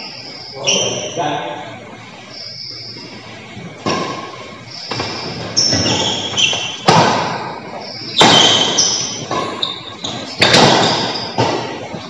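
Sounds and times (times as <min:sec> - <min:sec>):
shoes squeaking on court floor: 0:00.0 - 0:12.0
racket striking shuttlecock: 0:03.8 - 0:11.9.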